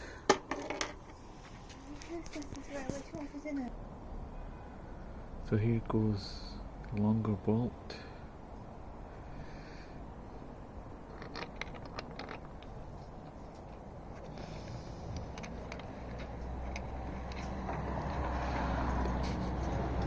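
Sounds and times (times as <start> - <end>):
metal clicks and scrapes of bolt: 11.0 - 17.8.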